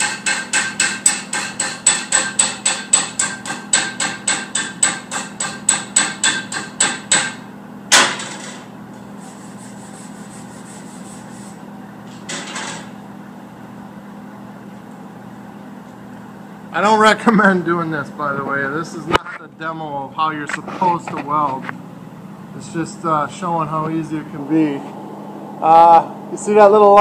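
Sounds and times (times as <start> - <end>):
chipping hammer striking metal: 0.0 - 8.5
scrape: 9.2 - 12.3, 20.5 - 21.6.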